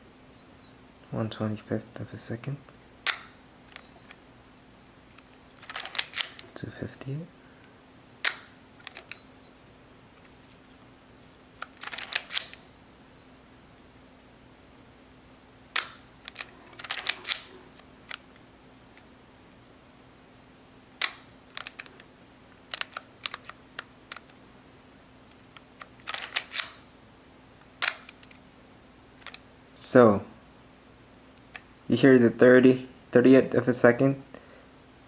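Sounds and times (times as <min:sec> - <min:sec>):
film advance lever ratcheting: 0:05.6 - 0:06.5, 0:11.6 - 0:12.6, 0:26.1 - 0:26.8.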